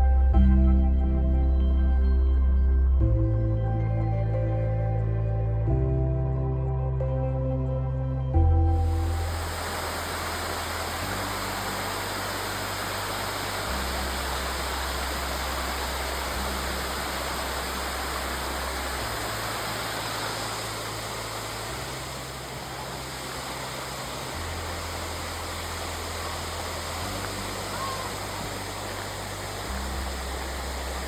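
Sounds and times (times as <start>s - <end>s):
slow music with low held notes: 0.0s - 31.0s
flowing water rushing: 8.8s - 31.0s.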